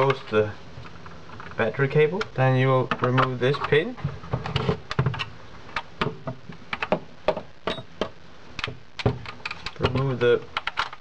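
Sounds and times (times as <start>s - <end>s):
plastic gun parts clicking: 10.6s - 11.0s.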